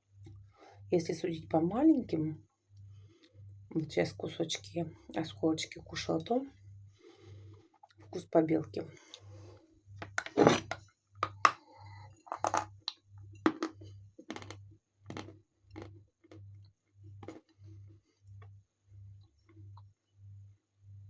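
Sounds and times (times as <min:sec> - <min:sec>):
chalk being chewed: 0:15.1 - 0:16.4.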